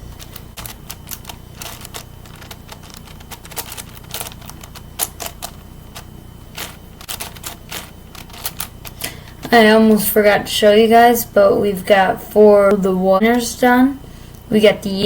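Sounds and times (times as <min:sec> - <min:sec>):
puzzle cube clicking: 0:00.1 - 0:09.2.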